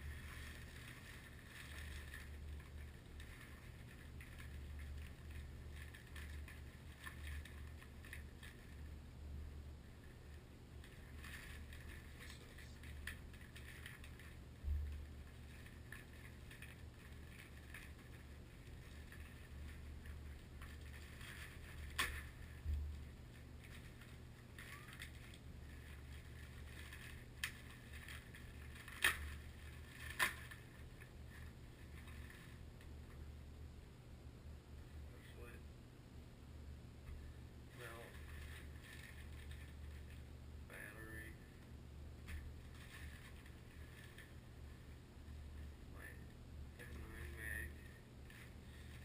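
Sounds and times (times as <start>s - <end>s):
rustling handling noise: 0.0s - 33.4s, 37.0s - 49.0s
low steady hum: 0.0s - 49.0s.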